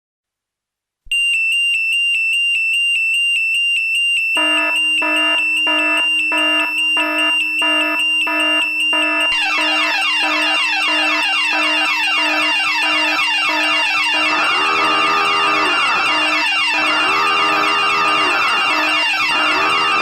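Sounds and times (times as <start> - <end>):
high pulsing alarm tone: 3.2 - 20.0
lower pulsing alarm tone: 3.3 - 20.0.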